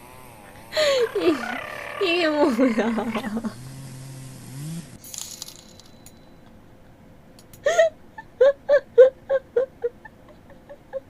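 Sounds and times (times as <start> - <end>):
pet whining: 0.0 - 5.0.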